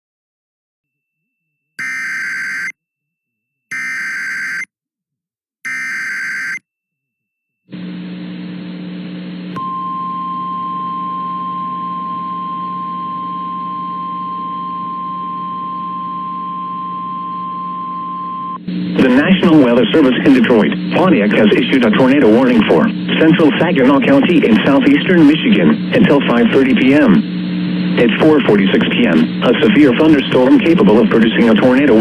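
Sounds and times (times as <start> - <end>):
steady warning alarm tone: 1.8 - 2.8, 3.7 - 4.7, 5.7 - 6.6, 9.6 - 20.1
harsh digital data bursts: 5.7 - 6.6
hissing humming radio channel: 7.7 - 9.6, 13.1 - 32.0.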